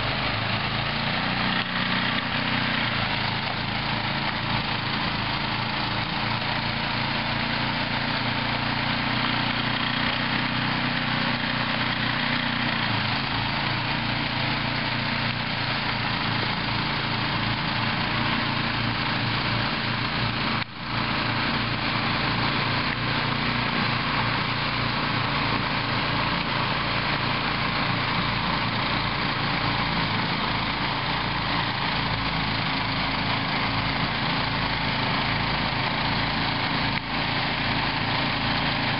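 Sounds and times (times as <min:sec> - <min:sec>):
snow thrower engine running: 0:00.0 - 0:38.9.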